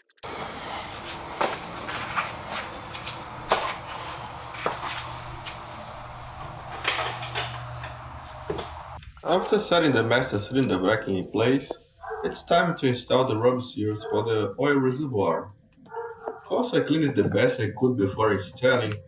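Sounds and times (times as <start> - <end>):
steady low hum: 0.2 - 11.8.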